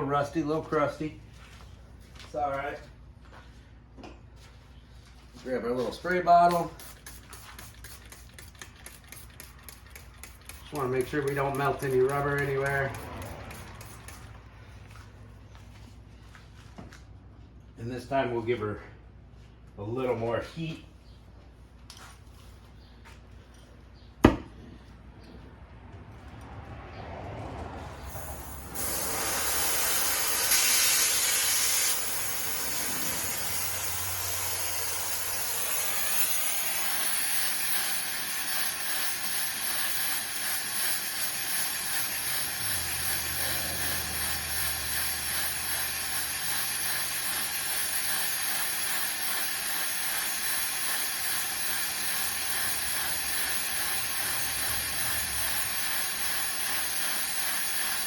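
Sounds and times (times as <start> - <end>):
gas torch flame hissing: 6.0 - 14.4, 27.8 - 58.0.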